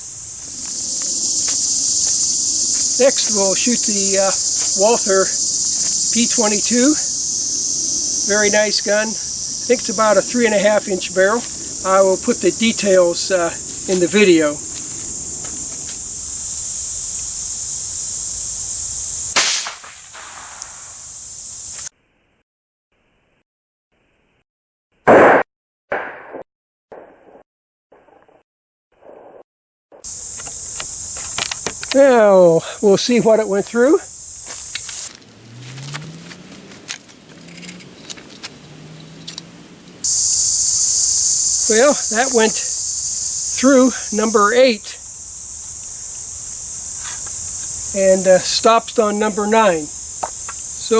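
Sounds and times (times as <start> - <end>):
crickets chirring: 0.0 - 21.9, 30.0 - 50.9
pistol shot: 19.4 - 20.8, 25.1 - 26.4
vehicle engine hum: 34.1 - 40.4.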